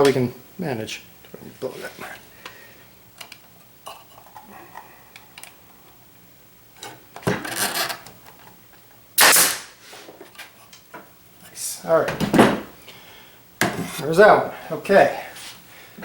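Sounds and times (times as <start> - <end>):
nail gun firing into wood: 9.2 - 9.8.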